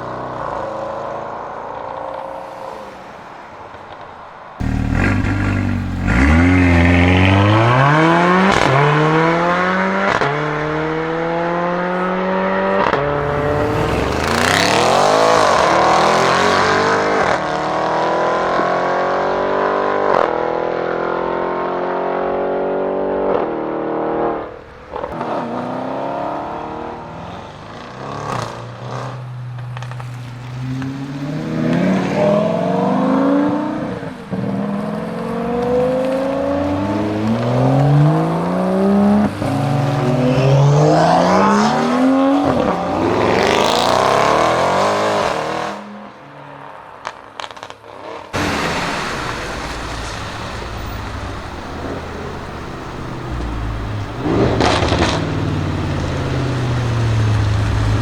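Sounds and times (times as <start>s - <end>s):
exhaust cracks: 4.6s - 9.0s, 47.0s - 58.0s
car engine accelerating: 4.6s - 17.5s, 29.8s - 45.8s, 48.4s - 58.0s.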